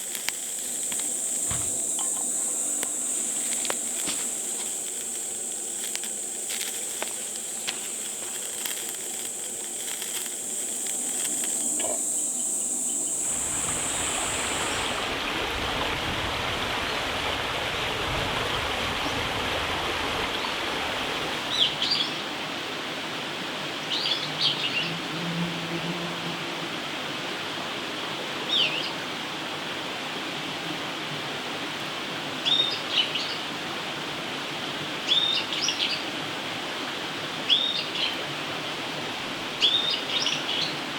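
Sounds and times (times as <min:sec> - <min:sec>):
steady rushing noise: 0:00.0 - 0:21.6
insects buzzing: 0:00.0 - 0:22.1.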